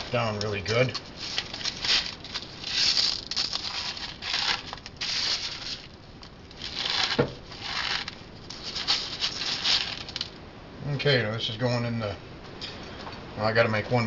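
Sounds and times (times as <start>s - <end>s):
chip crumbs crunching and rustling: 0.0s - 10.4s.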